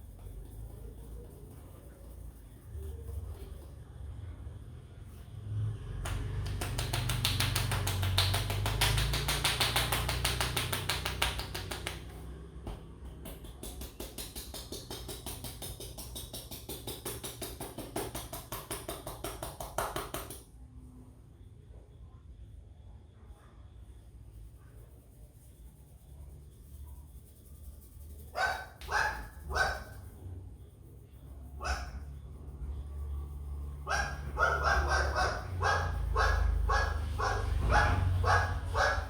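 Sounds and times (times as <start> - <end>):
hands slapping in fast rhythm: 6.0 - 20.4.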